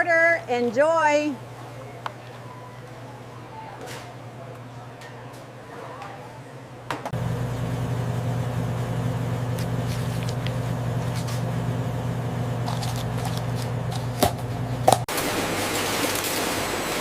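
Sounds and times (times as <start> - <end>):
car engine idling: 7.2 - 14.0.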